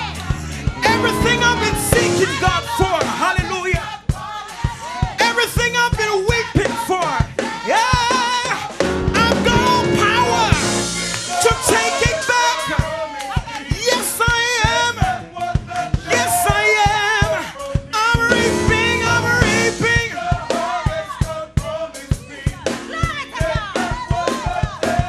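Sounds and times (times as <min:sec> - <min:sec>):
drum kit beat: 0:00.0 - 0:25.0
person singing with vibrato: 0:00.4 - 0:05.5, 0:06.1 - 0:15.2.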